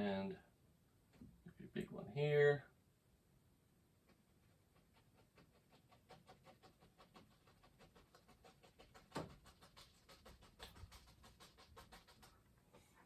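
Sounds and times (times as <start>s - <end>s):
brush tapping on canvas: 4.1s - 12.9s.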